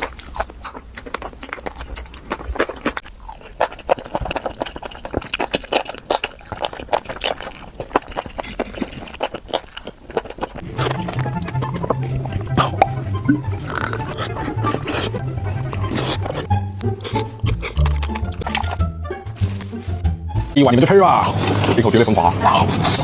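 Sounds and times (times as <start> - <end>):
chewing and biting food: 0.0 - 18.8.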